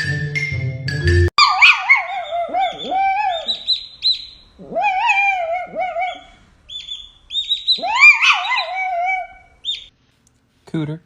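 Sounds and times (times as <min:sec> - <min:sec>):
animal long wavering calls: 0:01.4 - 0:09.9.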